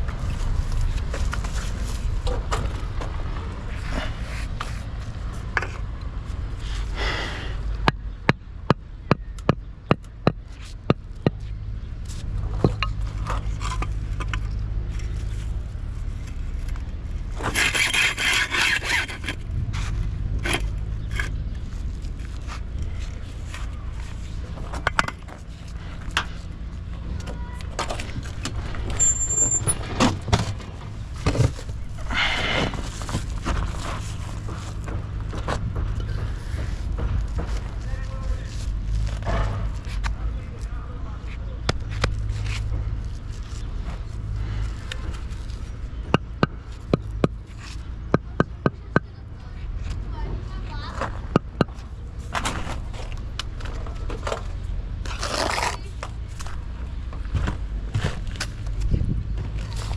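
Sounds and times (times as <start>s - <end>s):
loud scrape: 17.4s - 21.4s.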